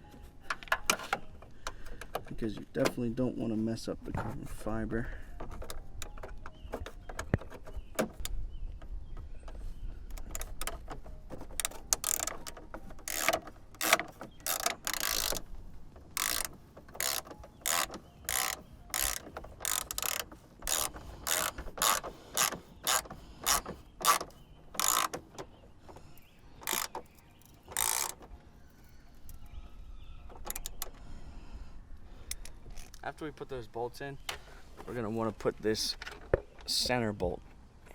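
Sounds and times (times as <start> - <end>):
hand ratchet strokes: 10.1 - 15.5, 16.1 - 25.4, 26.6 - 28.3, 30.4 - 31.0.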